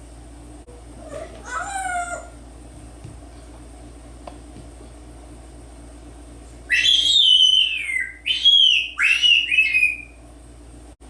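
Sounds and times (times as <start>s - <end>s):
parrot whistling: 6.7s - 10.2s.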